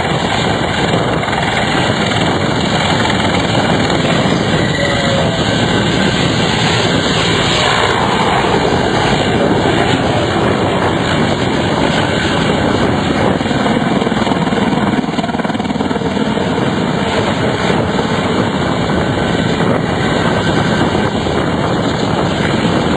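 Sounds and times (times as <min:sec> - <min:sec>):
helicopter rotor and engine: 0:00.0 - 0:22.9.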